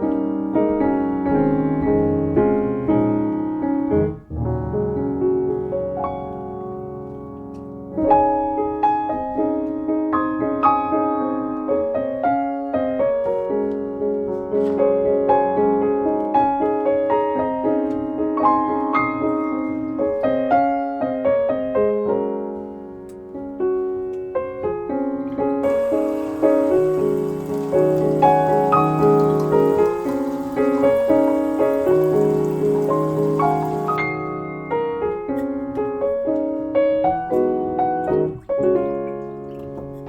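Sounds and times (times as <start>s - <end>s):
solo piano music: 0.0s - 14.1s, 15.2s - 40.0s.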